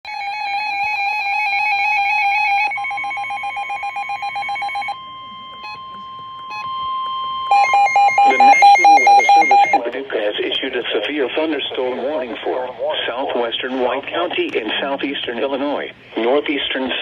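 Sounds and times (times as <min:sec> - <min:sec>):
warbling electronic alarm: 0:00.1 - 0:05.0, 0:06.5 - 0:09.8
steady high tone: 0:00.9 - 0:05.0, 0:07.4 - 0:09.8
short beeps: 0:07.5 - 0:09.8.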